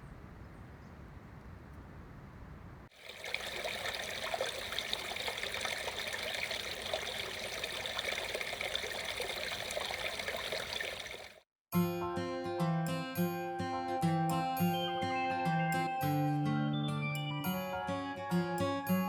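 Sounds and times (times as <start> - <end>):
water trickling: 2.9 - 11.4.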